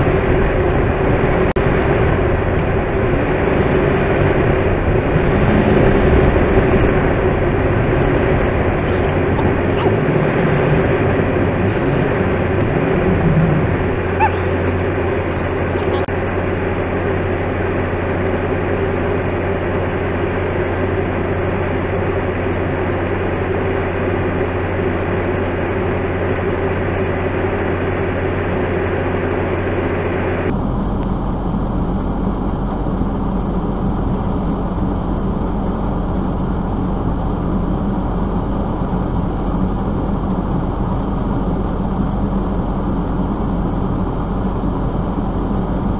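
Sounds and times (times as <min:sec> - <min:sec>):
deep dull hum: 0:00.0 - 0:16.1
vehicle engine and road drone: 0:00.0 - 0:45.9.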